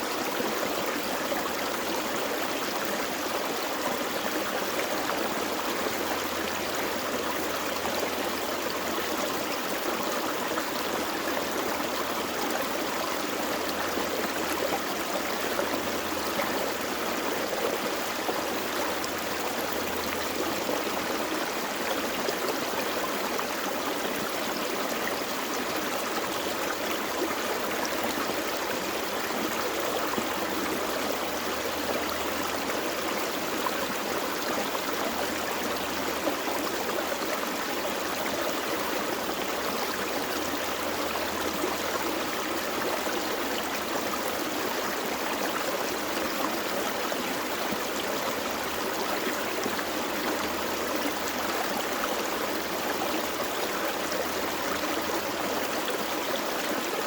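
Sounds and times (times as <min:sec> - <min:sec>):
stream flowing over rocks: 0:00.0 - 0:57.0.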